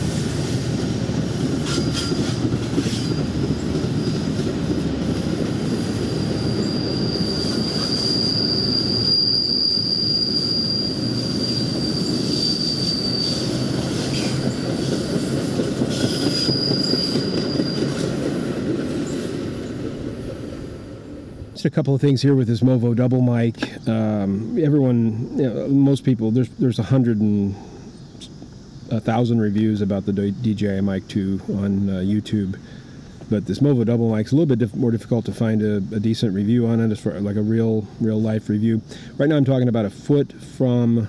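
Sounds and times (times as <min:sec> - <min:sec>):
wheels squealing on rails: 0:00.0 - 0:21.6
train cars rumbling: 0:00.0 - 0:22.9.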